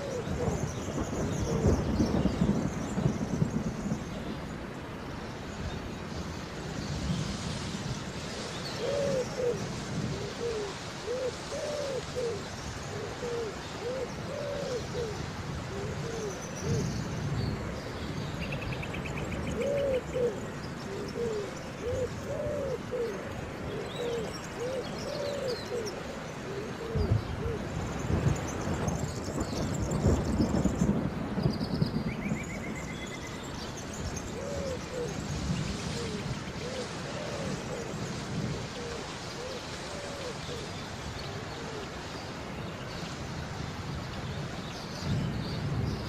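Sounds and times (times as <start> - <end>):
thunder rumbles: 0.0 - 4.8, 27.0 - 32.9
rain hissing: 0.0 - 46.0.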